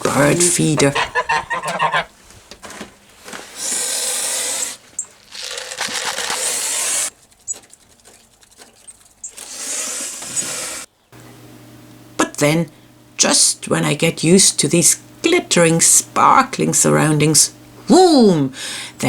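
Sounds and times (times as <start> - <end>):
birdseed pouring rattling hiss: 3.6 - 10.8.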